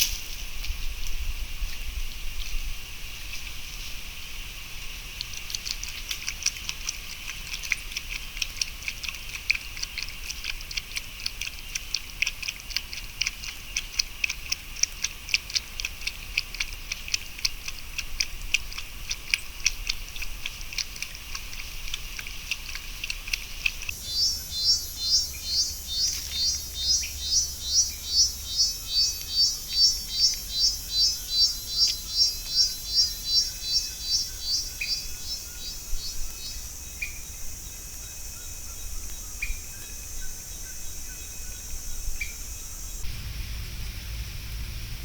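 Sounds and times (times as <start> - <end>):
insects chirping: 18.6 - 45.0
pulsing high insect call: 23.4 - 45.0.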